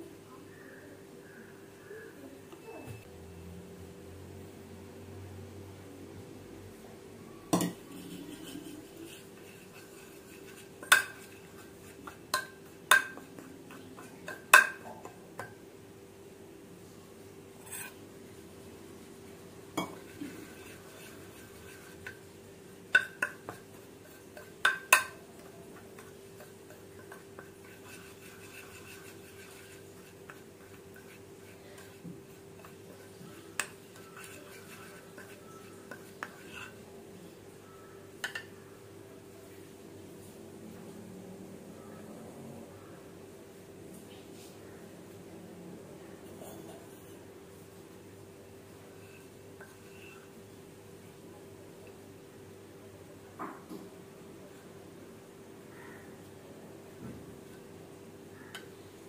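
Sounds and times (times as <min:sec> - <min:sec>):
faint steady hum: 0:00.0 - 0:59.0
spoon clinking on bowls: 0:10.8 - 0:15.6, 0:22.9 - 0:32.0.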